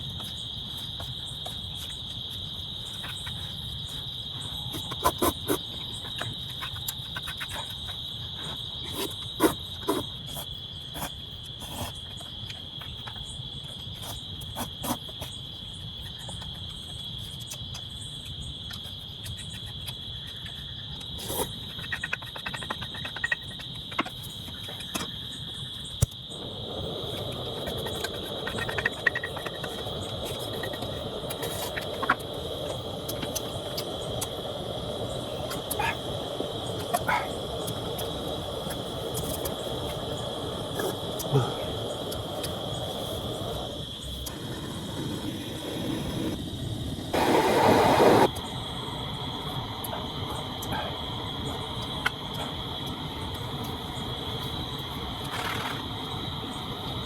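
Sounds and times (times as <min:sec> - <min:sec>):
crickets trilling: 0:00.0 - 0:57.0
rushing noise: 0:44.6 - 0:49.0.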